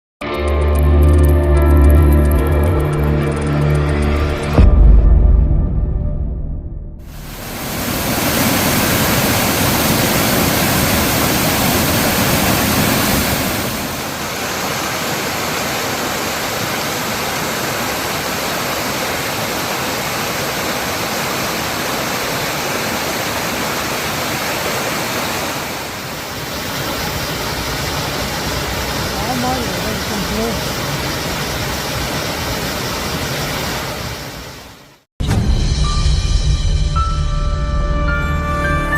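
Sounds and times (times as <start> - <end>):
stream water rushing over rocks: 7.1 - 35.0.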